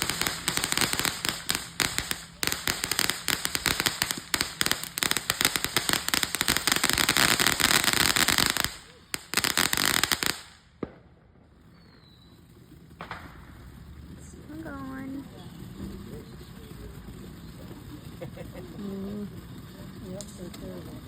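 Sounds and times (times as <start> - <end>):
fireworks crackling pops: 0.0 - 21.0.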